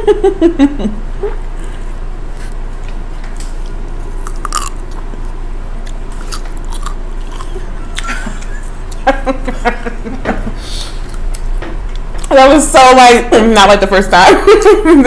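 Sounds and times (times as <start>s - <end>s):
steady low hum: 0.0s - 15.0s
person chewing crunchy food: 2.3s - 8.0s, 10.9s - 12.3s.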